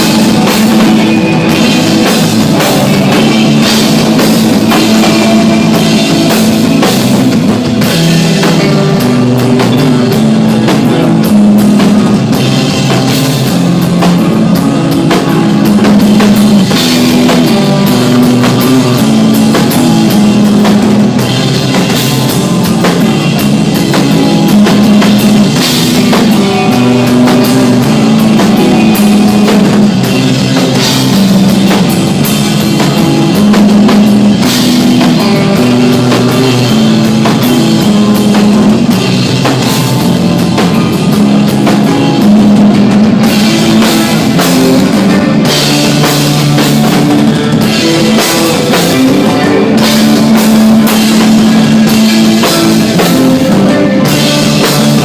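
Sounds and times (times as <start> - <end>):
bass line: 0.0 - 55.0
drum kit with cymbal hits: 0.0 - 55.0
electric guitar: 0.0 - 55.0
rock band playing live: 0.0 - 55.0.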